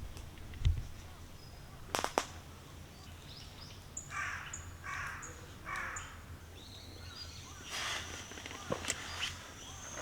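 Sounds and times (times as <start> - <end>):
bird calling harshly: 4.0 - 6.2.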